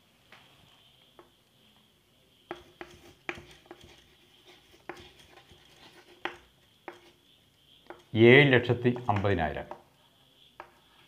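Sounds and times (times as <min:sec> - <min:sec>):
pen writing on paper: 0:02.5 - 0:08.1.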